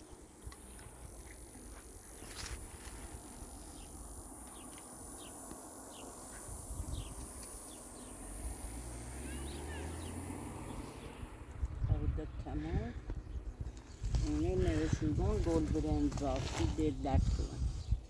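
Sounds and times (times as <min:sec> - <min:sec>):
low wind rumble: 0:00.0 - 0:18.0
high-pitched insect drone: 0:00.4 - 0:10.8.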